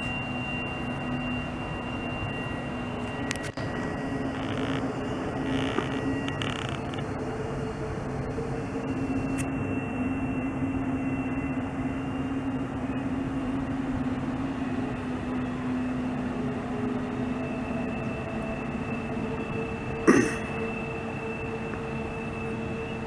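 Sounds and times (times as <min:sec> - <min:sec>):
low droning tone: 0:00.0 - 0:23.0.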